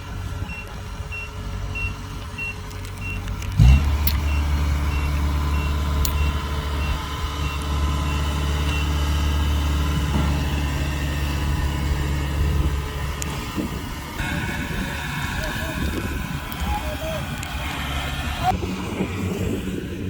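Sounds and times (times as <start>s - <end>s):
diesel engine starting and running: 0.0s - 20.0s
warning beeper beeping: 0.5s - 9.0s.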